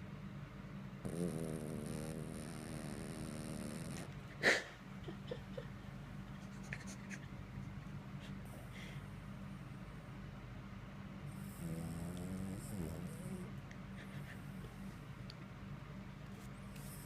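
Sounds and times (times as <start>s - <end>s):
dog snoring: 1.0s - 4.2s, 11.3s - 14.8s, 16.7s - 17.0s
dog snorting: 1.0s - 4.6s, 11.3s - 14.5s.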